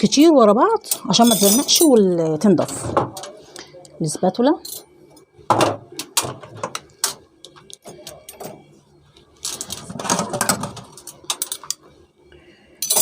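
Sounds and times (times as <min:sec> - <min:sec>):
dishes clinking in dishwasher racks: 0:00.9 - 0:03.3, 0:09.6 - 0:11.7.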